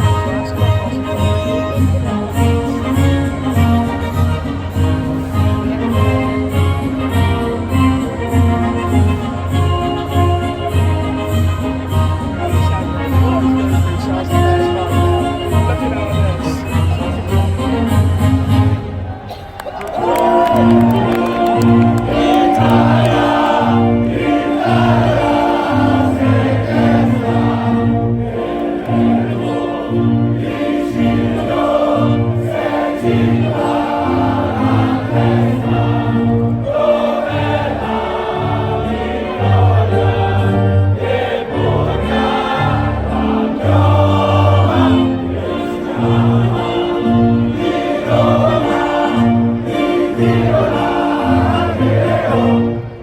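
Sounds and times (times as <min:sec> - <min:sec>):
orchestral music over loudspeakers: 0:00.0 - 0:53.0
choir singing: 0:20.0 - 0:53.0.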